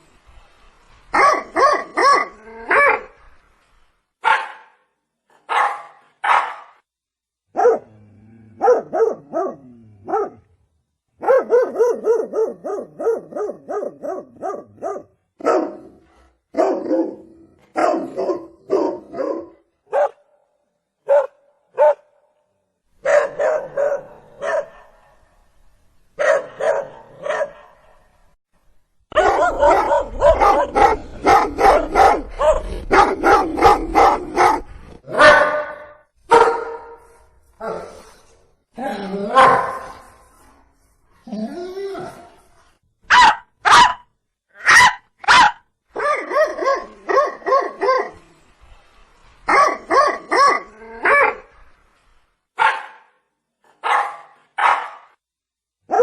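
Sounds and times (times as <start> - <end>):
dog barking: 1.1 - 3.1, 4.2 - 4.8, 5.4 - 6.8, 7.5 - 7.9, 8.6 - 10.4, 11.2 - 20.3, 21.0 - 22.2, 23.0 - 25.2, 26.2 - 28.0, 29.1 - 37.0, 39.3 - 40.0, 43.1 - 48.2, 49.5 - 51.5, 52.6 - 53.2, 53.8 - 55.2.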